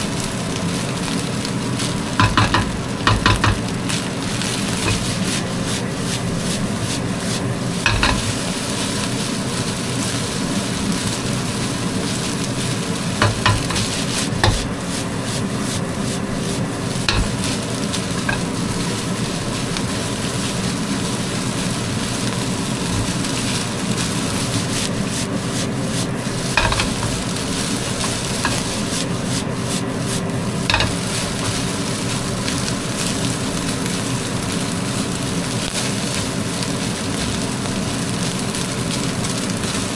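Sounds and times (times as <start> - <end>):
rice sizzling in a pan: 0.0 - 39.9
utensil clacking against pan: 2.2 - 3.8, 4.7 - 5.4, 7.8 - 8.4, 13.2 - 14.8, 17.1 - 18.6, 22.8 - 23.4, 26.4 - 29.1, 30.6 - 31.7.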